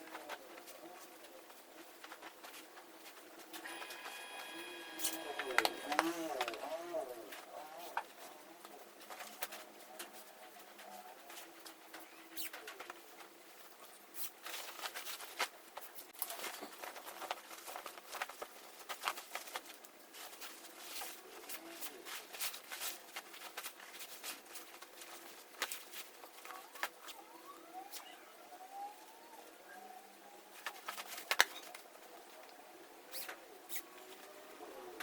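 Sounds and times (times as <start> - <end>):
dove cooing: 3.7 - 7.9.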